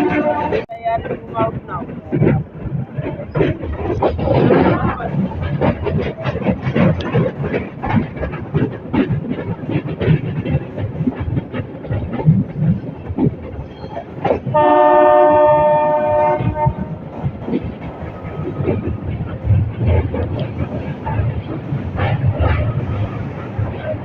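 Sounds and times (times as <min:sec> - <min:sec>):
train horn blast: 0:00.0 - 0:00.7, 0:14.5 - 0:17.0
train coach rattling over rail joints: 0:00.0 - 0:24.0.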